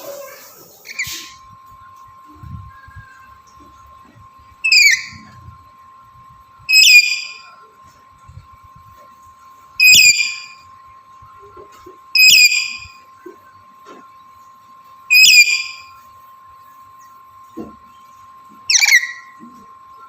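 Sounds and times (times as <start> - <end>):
parrot shrill calls: 0.8 - 1.3, 4.6 - 5.2, 6.7 - 7.5, 9.8 - 10.6, 12.2 - 13.0, 15.1 - 15.9, 18.7 - 19.4.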